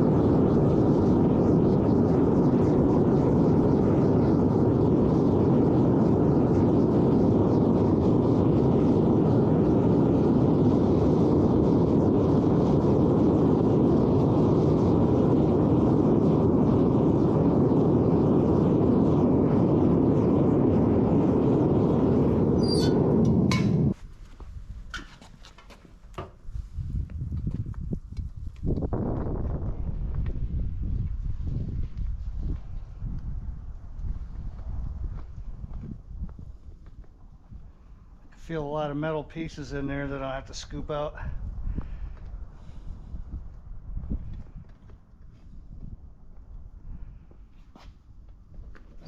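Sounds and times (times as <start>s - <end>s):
gas burner rushing: 0.0s - 24.1s, 24.7s - 49.0s.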